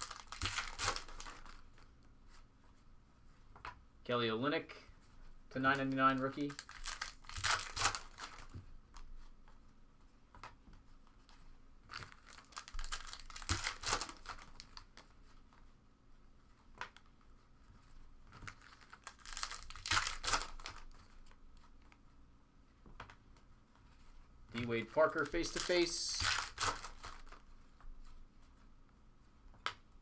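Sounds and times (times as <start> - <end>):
wrappers tearing and crinkling: 0.0 - 1.6, 6.4 - 8.5, 11.9 - 15.1, 18.4 - 21.1, 25.0 - 27.4.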